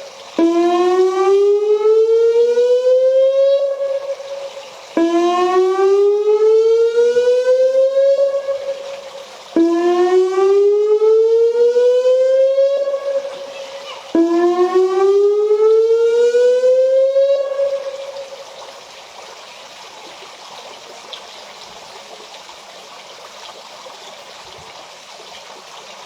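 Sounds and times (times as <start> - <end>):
electronic siren rising wail: 0.4 - 18.6.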